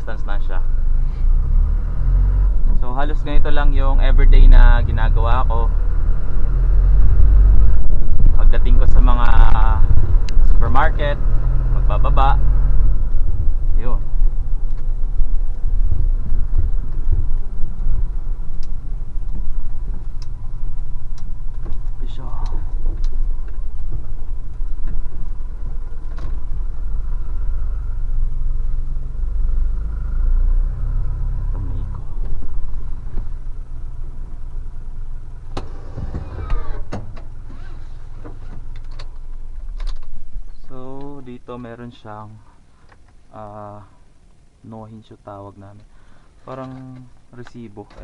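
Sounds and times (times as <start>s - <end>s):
truck engine low rumble: 0.0s - 48.0s
sharp clicks and knocks: 38.2s - 40.2s.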